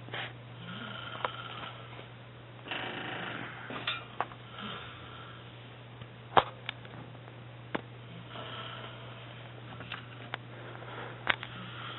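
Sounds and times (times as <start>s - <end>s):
steady low hum: 0.0s - 11.9s
man snoring: 0.6s - 1.9s, 2.7s - 3.8s, 4.5s - 5.4s, 8.1s - 9.3s, 11.5s - 11.9s.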